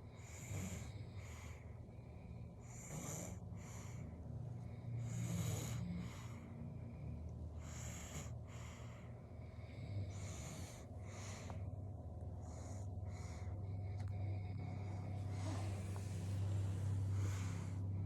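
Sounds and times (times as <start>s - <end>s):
baby snoring: 14.7s - 17.7s.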